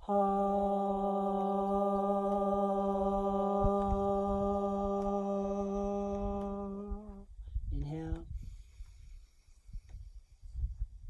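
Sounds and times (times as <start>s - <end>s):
person chanting long tone: 0.0s - 7.3s.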